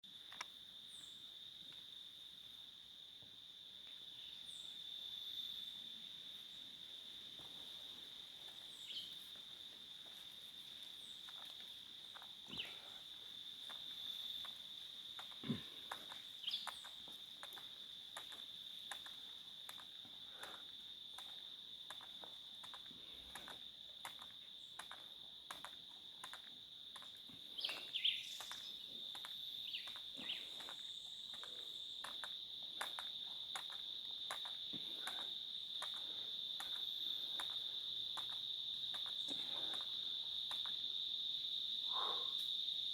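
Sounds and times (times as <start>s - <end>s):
faint clicks: 0.3s - 0.5s, 14.4s - 40.8s
high-pitched insect trill: 3.5s - 42.9s.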